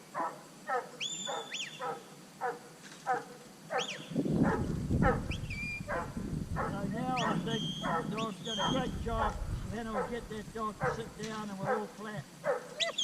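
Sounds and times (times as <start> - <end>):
dog barking: 0.1 - 13.0
low rumbling noise: 4.2 - 11.5
high whistled commands: 5.3 - 5.9, 7.0 - 9.1.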